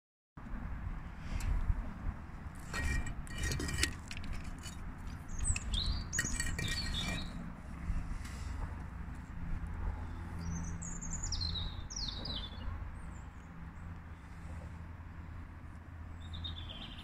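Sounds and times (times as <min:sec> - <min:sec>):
small birds chirping: 0:05.3 - 0:07.4, 0:10.0 - 0:13.5, 0:16.2 - 0:17.0.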